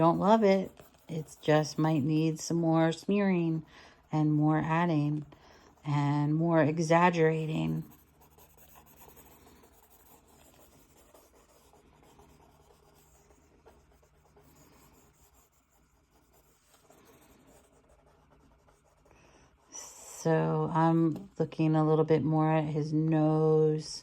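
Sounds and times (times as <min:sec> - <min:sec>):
pencil scratching on paper: 0:00.0 - 0:19.9
low room hum: 0:00.0 - 0:24.0.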